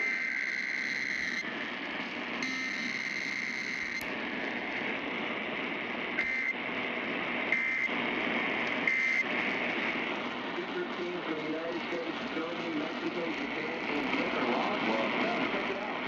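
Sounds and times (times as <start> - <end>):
screechy digital data tones: 0.0 - 1.5, 2.4 - 4.0.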